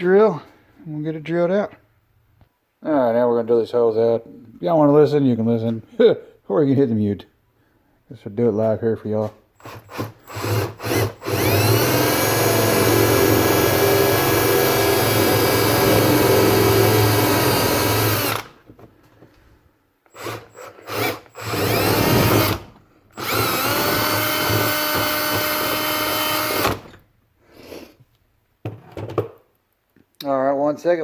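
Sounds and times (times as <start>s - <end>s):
electric drill boring wood: 9.6s - 18.6s, 20.1s - 27.0s.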